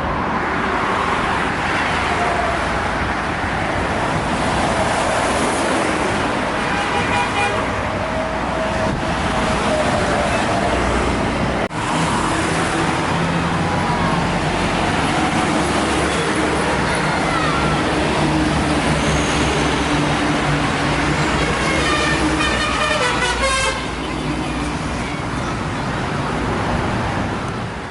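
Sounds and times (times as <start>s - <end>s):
heavy road traffic: 0.0s - 27.9s
bus musical horn tune: 6.7s - 7.7s, 21.4s - 24.0s.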